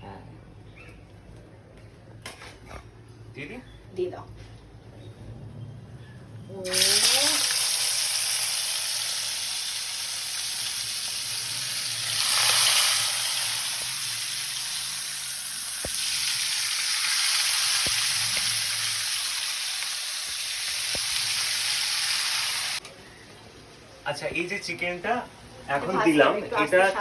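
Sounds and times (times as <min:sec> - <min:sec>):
chicken sizzling in hot oil: 0:06.6 - 0:22.8.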